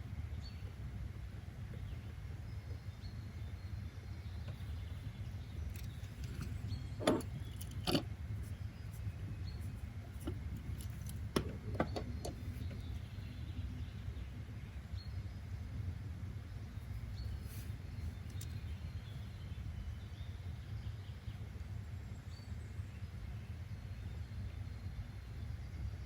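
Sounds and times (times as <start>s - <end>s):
low background rumble: 0.0s - 26.0s
small clicks and knocks: 5.7s - 8.5s, 10.2s - 13.0s, 18.2s - 18.7s.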